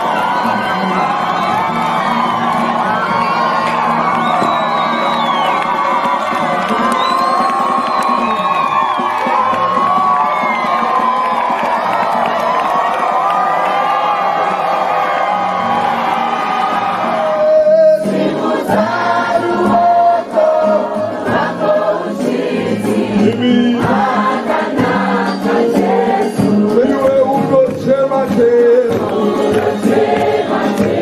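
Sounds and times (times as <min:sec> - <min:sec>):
choir singing gospel song: 0:17.2 - 0:27.1, 0:28.6 - 0:31.0.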